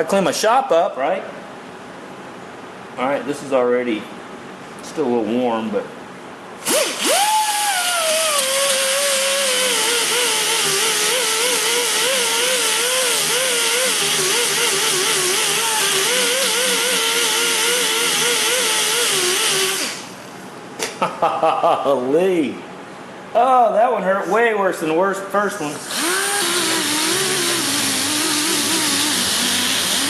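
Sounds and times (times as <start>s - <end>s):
rotary tool whine grinding plastic: 25.9s - 30.0s.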